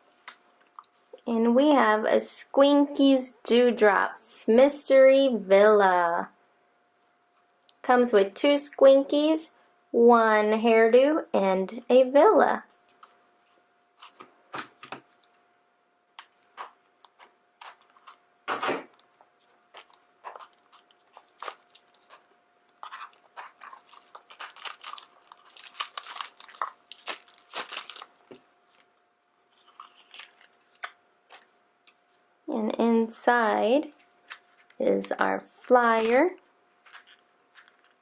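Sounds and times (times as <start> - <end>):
packaging crinkling and tearing: 16.2 - 18.2, 18.9 - 32.0, 33.9 - 34.8, 35.4 - 38.0.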